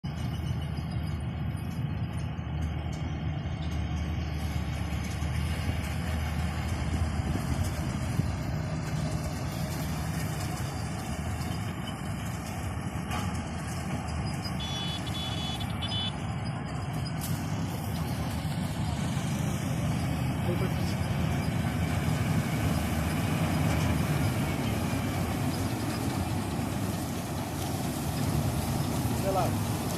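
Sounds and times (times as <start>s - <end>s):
diesel engine rumbling: 0.0s - 29.9s
high beeping tone: 14.3s - 16.4s.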